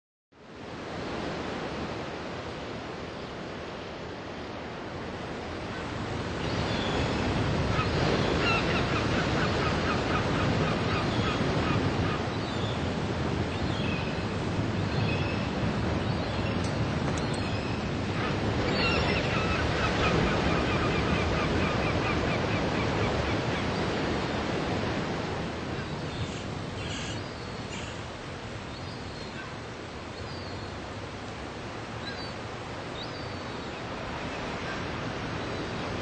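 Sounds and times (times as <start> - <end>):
surf washing on shore: 0.4 - 36.0
seagulls calling: 6.4 - 12.8, 16.2 - 24.0, 25.7 - 28.1.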